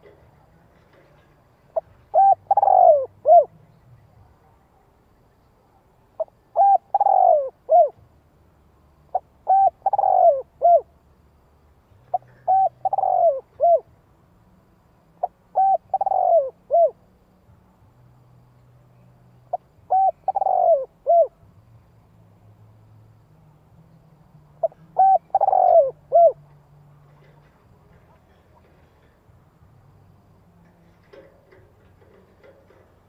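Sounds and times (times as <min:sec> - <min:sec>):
dove cooing: 0:00.0 - 0:03.6, 0:06.2 - 0:08.0, 0:09.1 - 0:11.0, 0:12.1 - 0:13.9, 0:15.2 - 0:17.0, 0:19.8 - 0:21.4, 0:24.6 - 0:26.4.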